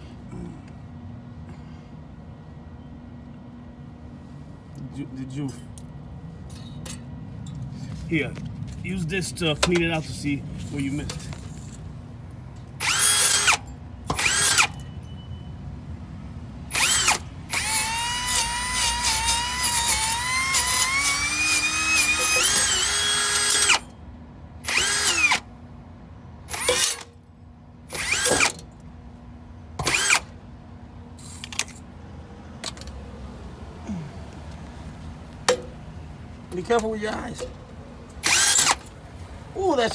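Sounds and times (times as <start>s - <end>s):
power tool whining: 12.8s - 14.8s, 16.7s - 23.9s, 24.6s - 25.5s, 26.5s - 27.1s, 27.9s - 28.6s, 29.8s - 30.4s, 38.2s - 39.0s.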